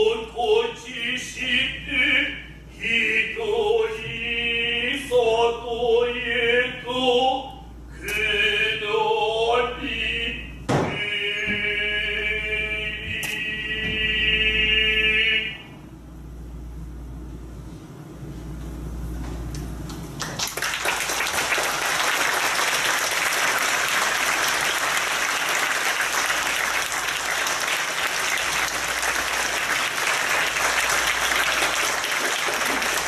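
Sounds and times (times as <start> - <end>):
audience applauding: 20.2 - 33.0.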